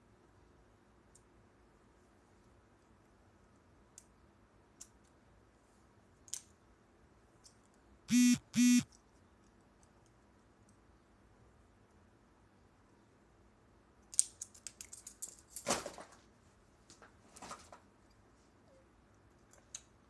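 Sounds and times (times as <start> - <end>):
faint metallic clicks of handcuffs: 4.8 - 5.2, 6.2 - 6.6, 7.4 - 7.8, 8.9 - 10.8, 14.0 - 15.6
loud buzzy beeps: 8.1 - 8.8.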